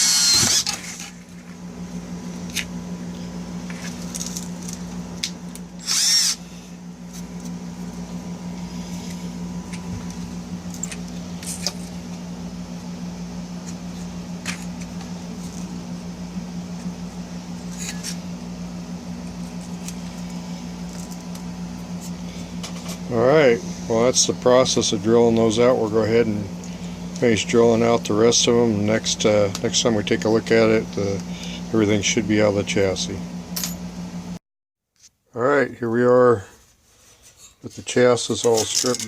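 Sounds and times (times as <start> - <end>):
power drill drilling metal: 0.0 - 1.0, 5.8 - 6.4.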